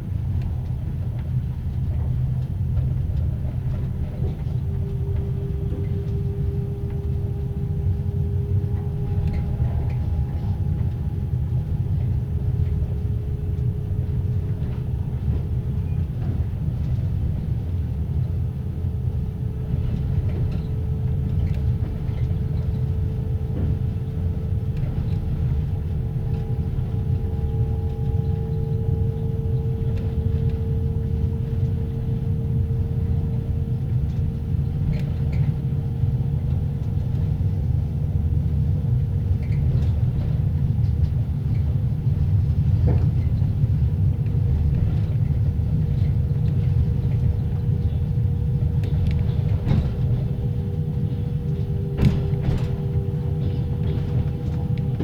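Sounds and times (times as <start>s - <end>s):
train rumbling: 0.0s - 55.0s
generator whining: 25.7s - 36.3s, 46.5s - 55.0s.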